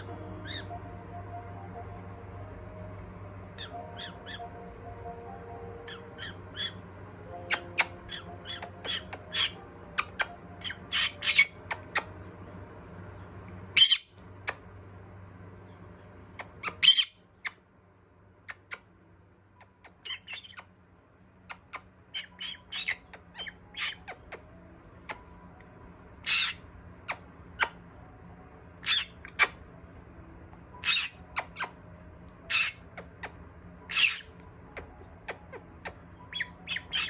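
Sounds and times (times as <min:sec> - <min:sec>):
parrot squawking and chirping: 0:00.0 - 0:01.2, 0:03.4 - 0:12.3, 0:13.7 - 0:14.6, 0:16.3 - 0:17.6, 0:19.6 - 0:20.8, 0:21.4 - 0:25.4, 0:26.2 - 0:27.9, 0:28.8 - 0:29.8, 0:30.7 - 0:37.0.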